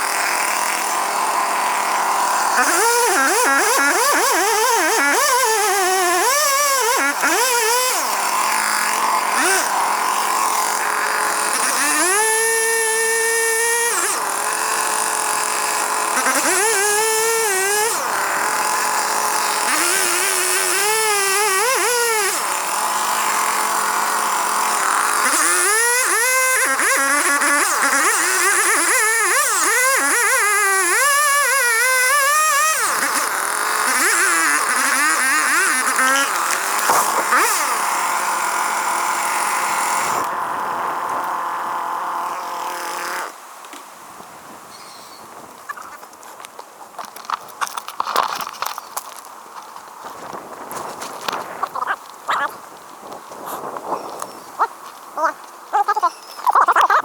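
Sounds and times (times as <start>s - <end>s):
engine revving: 0.0s - 43.4s.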